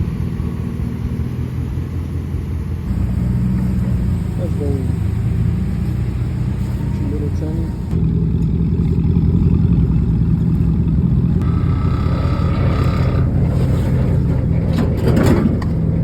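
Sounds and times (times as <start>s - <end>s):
vehicle engine running: 0.0s - 16.0s
higher steady tone: 11.4s - 14.6s.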